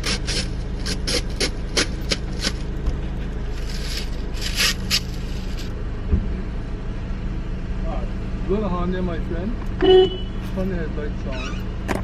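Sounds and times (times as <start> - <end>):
scraping and rubbing strokes: 0.0 - 2.8, 3.5 - 5.7.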